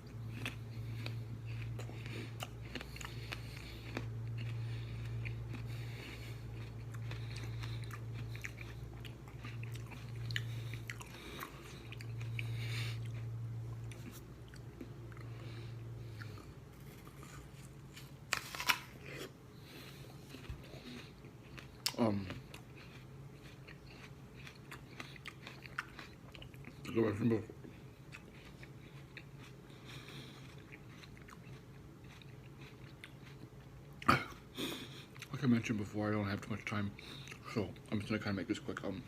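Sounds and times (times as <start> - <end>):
steady low hum: 0.0 - 39.0
apple crunching: 16.2 - 27.4.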